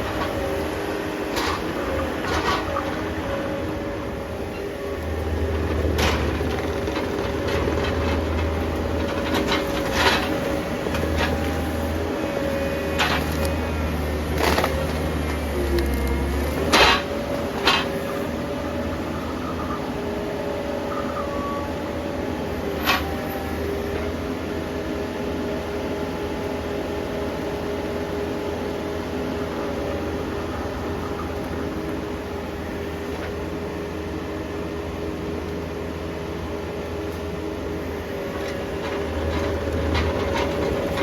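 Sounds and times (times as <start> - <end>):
engine running: 0.0 - 41.0.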